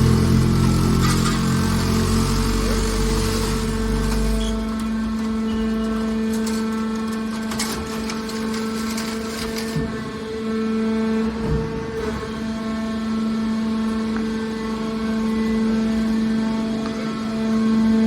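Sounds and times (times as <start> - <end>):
baler motor hum: 0.0 - 6.4.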